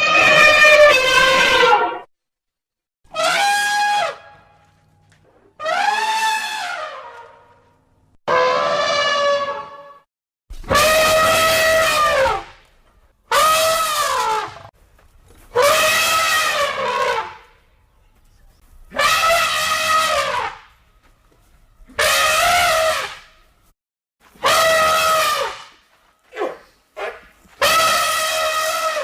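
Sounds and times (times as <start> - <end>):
elephant trumpeting: 0.0 - 2.0, 3.1 - 4.6, 5.6 - 7.4, 10.7 - 12.5, 13.3 - 14.7, 15.5 - 17.6, 18.9 - 20.7, 21.9 - 23.3, 24.4 - 25.7, 26.3 - 29.0.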